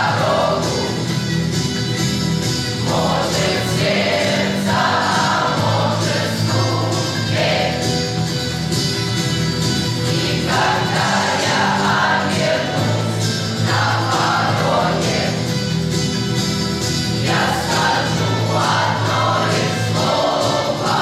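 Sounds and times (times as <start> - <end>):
youth choir singing: 0.0 - 1.1, 2.8 - 8.2, 10.0 - 15.6, 17.1 - 21.0.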